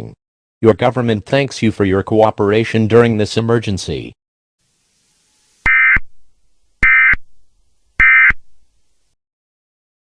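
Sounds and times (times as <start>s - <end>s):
warbling data tone bursts: 5.0s - 6.2s, 6.8s - 7.3s, 8.0s - 8.5s.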